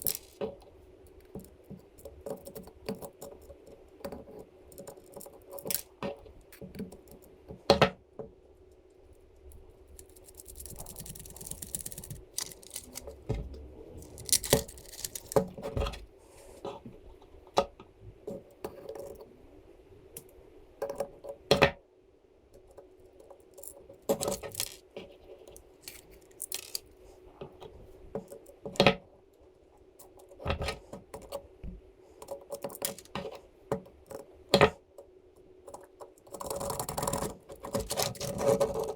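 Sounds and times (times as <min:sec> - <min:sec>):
metal and plastic parts clinking: 0:00.0 - 0:00.6, 0:09.9 - 0:13.2, 0:14.0 - 0:15.6, 0:23.6 - 0:24.8, 0:25.8 - 0:26.9, 0:32.2 - 0:33.3
faint steady hum: 0:00.0 - 0:38.9.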